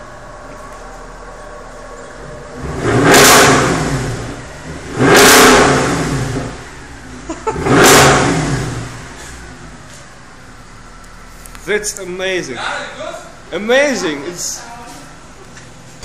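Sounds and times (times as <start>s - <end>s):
car engine revving: 0.0s - 12.2s.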